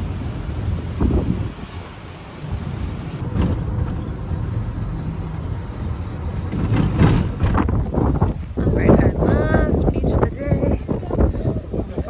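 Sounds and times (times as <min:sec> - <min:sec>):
wind buffeting microphone: 0:00.0 - 0:12.0
short clatter: 0:03.2 - 0:05.4, 0:06.3 - 0:08.5.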